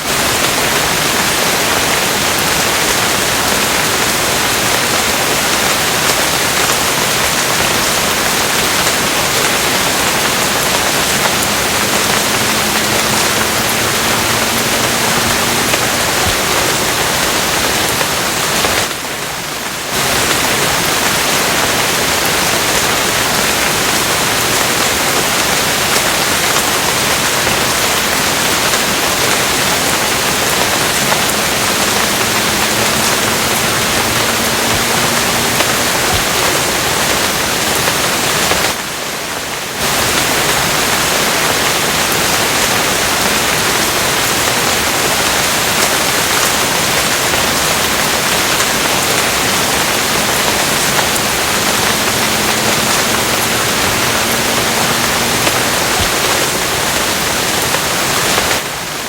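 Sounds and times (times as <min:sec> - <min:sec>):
rain hiss: 0:00.0 - 0:59.0.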